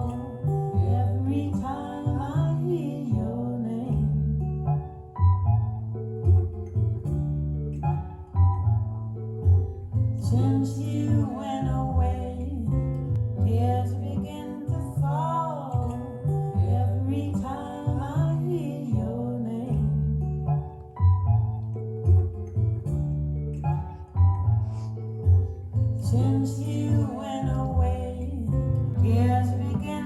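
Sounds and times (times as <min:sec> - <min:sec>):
person singing: 0:00.0 - 0:04.4, 0:10.2 - 0:20.2, 0:26.0 - 0:30.0
deep bass notes: 0:00.0 - 0:30.0
plucked guitar: 0:00.0 - 0:30.0.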